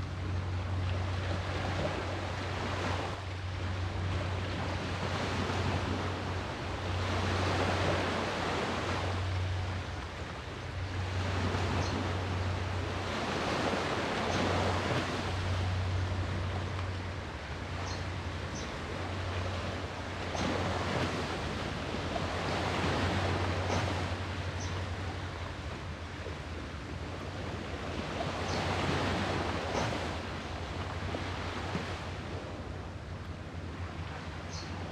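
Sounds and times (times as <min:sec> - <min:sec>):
sea waves washing ashore: 0:00.0 - 0:34.9
steady low rumble: 0:00.0 - 0:34.9.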